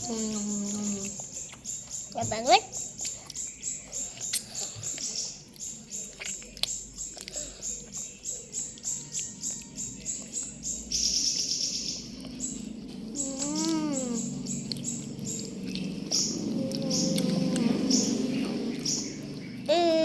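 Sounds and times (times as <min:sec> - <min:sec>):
chewing and mouth smacking: 0:00.4 - 0:10.6, 0:12.1 - 0:19.6
person humming: 0:13.2 - 0:14.4, 0:19.7 - 0:20.0.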